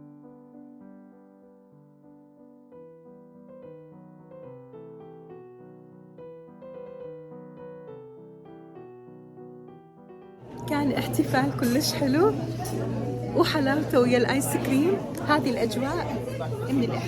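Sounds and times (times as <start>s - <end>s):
soft piano music: 0.0s - 17.0s.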